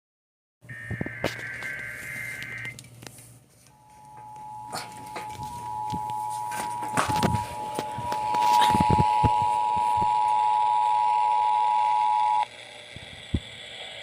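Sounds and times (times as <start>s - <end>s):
two-tone alert alarm: 0.7s - 2.8s, 3.7s - 12.4s.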